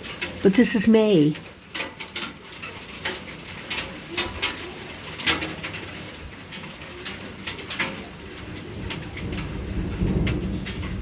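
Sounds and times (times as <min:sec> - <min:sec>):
low steady storm hiss: 0:00.0 - 0:11.0.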